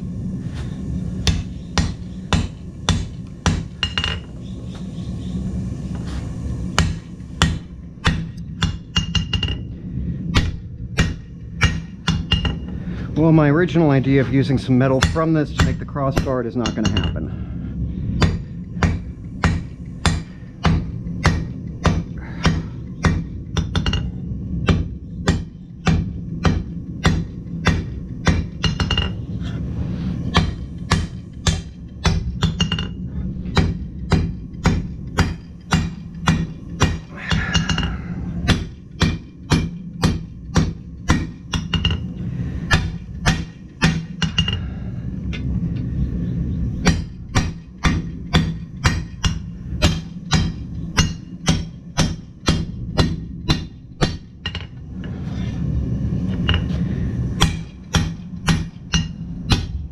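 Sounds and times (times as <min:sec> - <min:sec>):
steady low hum: 0:00.0 - 0:59.9
hammer striking steel on anvil: 0:01.2 - 0:04.3, 0:06.8 - 0:09.7, 0:10.3 - 0:12.7, 0:14.8 - 0:17.3, 0:18.2 - 0:29.2, 0:30.3 - 0:42.1, 0:42.7 - 0:44.7, 0:46.8 - 0:54.8, 0:57.4 - 0:59.8.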